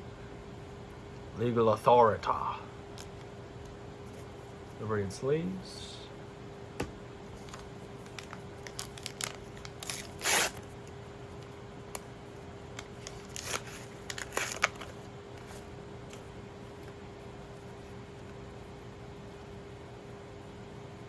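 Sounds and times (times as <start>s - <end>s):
cards rustling: 7.4s - 10.9s, 12.8s - 16.2s.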